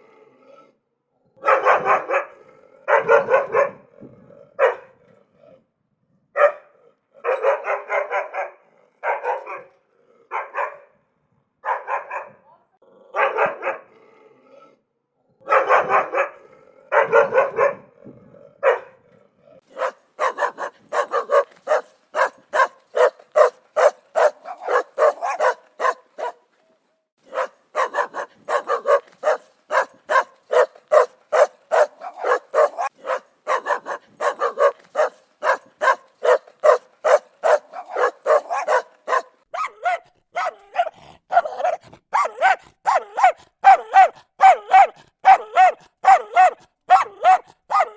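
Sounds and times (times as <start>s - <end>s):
dog barking aggressively: 1.4s - 5.0s, 6.4s - 11.0s, 11.6s - 12.4s, 13.1s - 14.0s, 15.4s - 18.0s, 18.6s - 19.0s, 19.6s - 26.5s, 27.2s - 47.9s.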